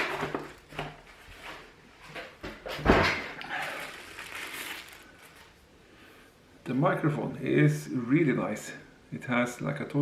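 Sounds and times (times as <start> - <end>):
packaging rustling: 3.4 - 5.6.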